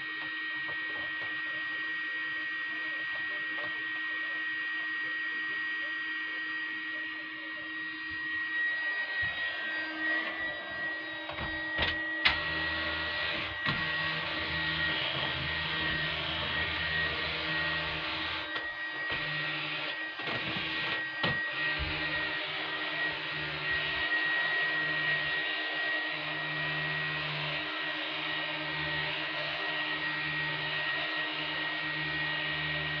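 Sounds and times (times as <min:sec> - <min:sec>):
vacuum cleaner running: 0:00.0 - 0:33.0
vacuum cleaner knocking: 0:08.0 - 0:33.0.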